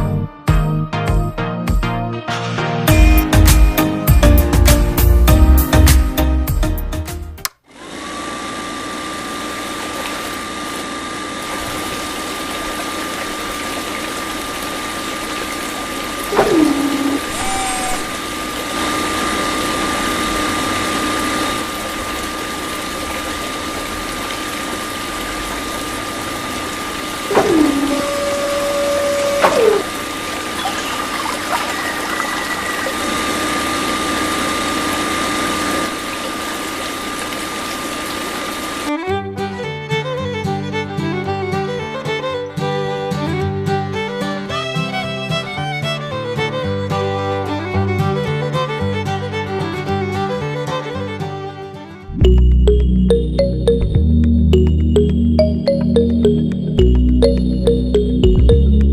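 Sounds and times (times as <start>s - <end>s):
mini water pump motor whine: 7.6s - 38.9s
rush of pumped water: 11.2s - 38.9s.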